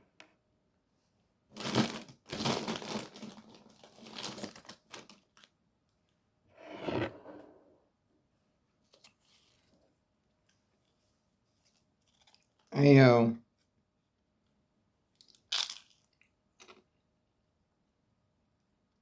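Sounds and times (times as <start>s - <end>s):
food packaging crinkling: 1.6s - 5.5s, 12.0s - 12.7s, 15.2s - 16.8s.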